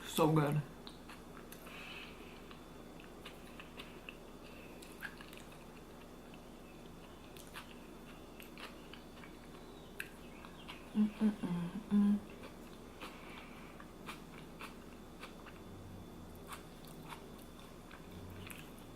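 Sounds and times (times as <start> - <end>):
chewing soft food: 0.8 - 11.1, 12.2 - 18.9
low voice hum: 10.9 - 12.4.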